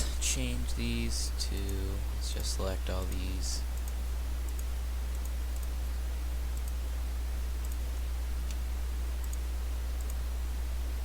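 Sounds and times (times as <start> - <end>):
low hum: 0.0 - 11.0
computer mouse clicks: 3.1 - 5.8, 6.5 - 6.8, 7.6 - 7.8, 9.2 - 9.4, 10.0 - 10.2.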